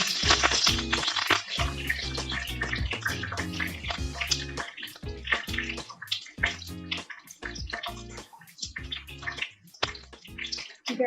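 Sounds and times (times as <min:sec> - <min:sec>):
music with deep bass and beat: 0:00.0 - 0:10.7
eggs sizzling in hot oil: 0:00.0 - 0:11.0.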